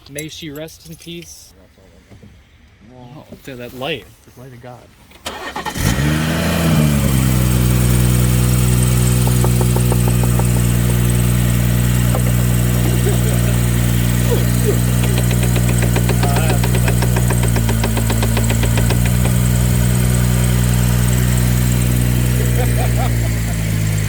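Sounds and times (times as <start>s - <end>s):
car engine idling: 5.3s - 24.0s.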